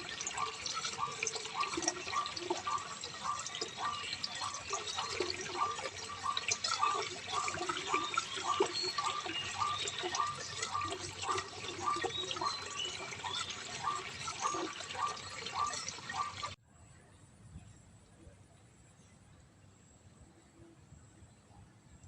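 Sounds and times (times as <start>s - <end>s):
small water drips: 0.0s - 16.6s
water trickling and splashing: 0.0s - 16.6s.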